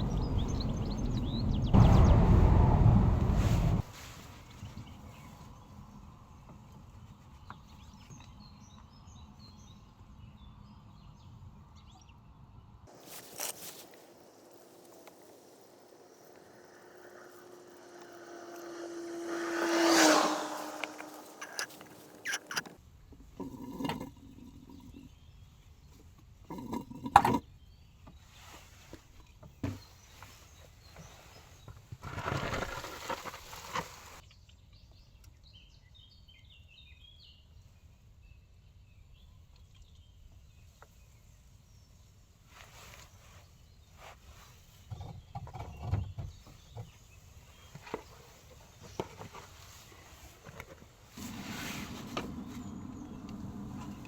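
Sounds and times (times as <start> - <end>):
scraping or rustling: 12.9 - 14.8, 29.7 - 34.2, 47.8 - 53.0.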